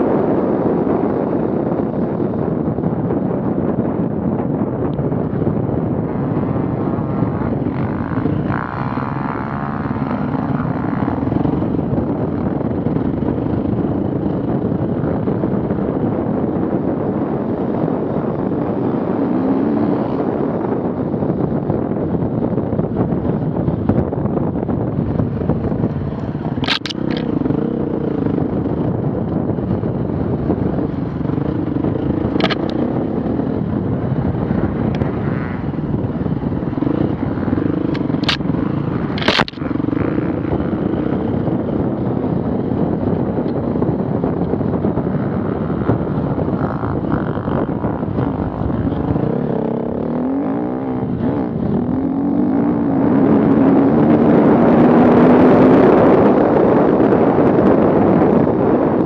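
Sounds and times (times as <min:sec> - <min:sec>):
off-road vehicle engine running: 0:00.0 - 0:59.0
sharp clacks: 0:26.2 - 0:27.4, 0:32.2 - 0:32.8, 0:37.8 - 0:40.1.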